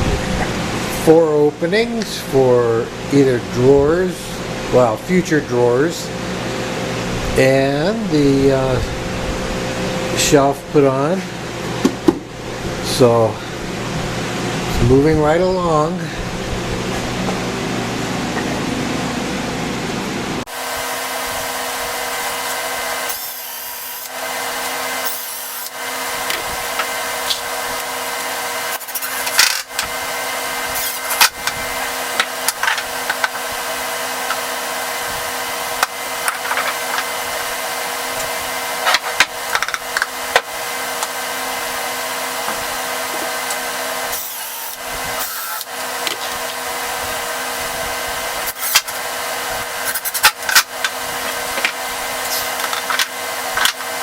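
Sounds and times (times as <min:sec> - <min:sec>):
power tool sanding wood: 0:20.5 - 0:38.7, 0:40.6 - 0:54.0.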